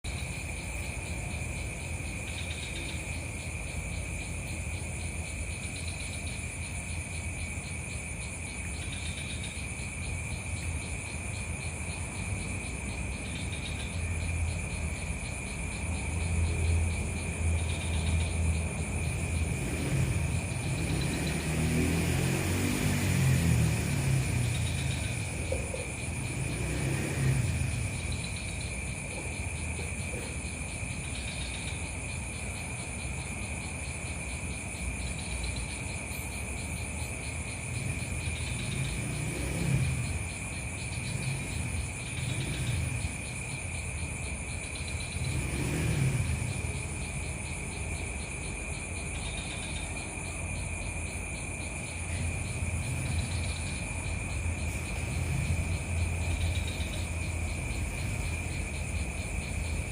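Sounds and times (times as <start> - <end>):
insects trilling: 0.0 - 59.9.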